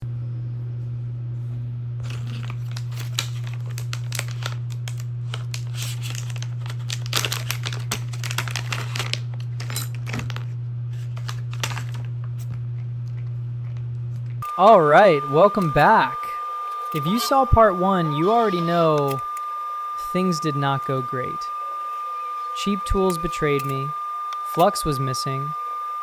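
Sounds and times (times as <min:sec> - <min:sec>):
steady low hum: 0:00.0 - 0:26.0
crinkling and rustling: 0:02.0 - 0:14.5.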